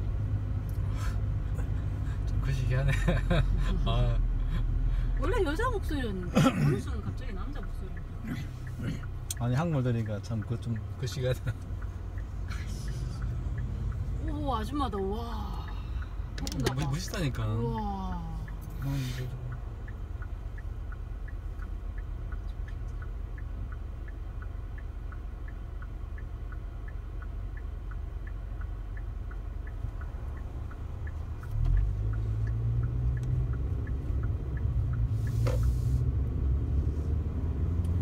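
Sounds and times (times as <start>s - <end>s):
car road noise rumble: 0.0s - 38.0s
faint regular ticking: 0.1s - 38.0s
brief hiss: 35.1s - 36.1s.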